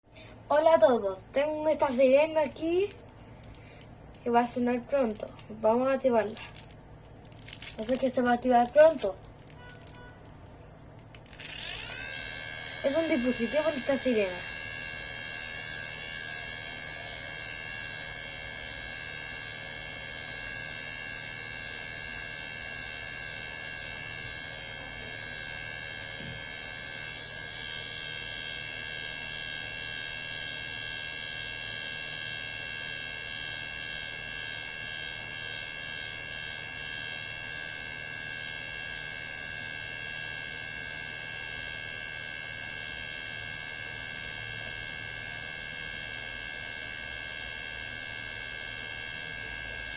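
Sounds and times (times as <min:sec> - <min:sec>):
rotor siren whine: 0:11.3 - 0:49.9.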